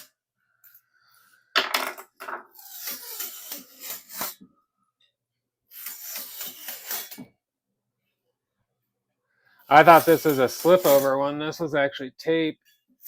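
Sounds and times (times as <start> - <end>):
tape peeling off a bicycle rim: 2.6 - 4.4, 5.7 - 7.3, 9.7 - 11.3.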